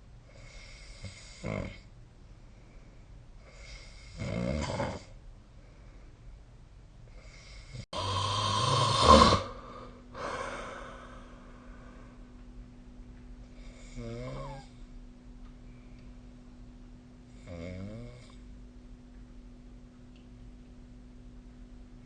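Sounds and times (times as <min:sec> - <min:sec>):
person snoring: 0:07.3 - 0:11.9, 0:13.6 - 0:14.8.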